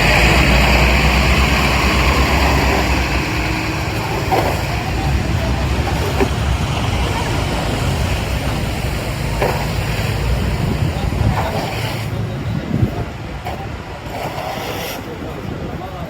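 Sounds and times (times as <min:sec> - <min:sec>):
rumble of passing vehicles: 0:00.0 - 0:16.0
street noise: 0:00.0 - 0:16.0.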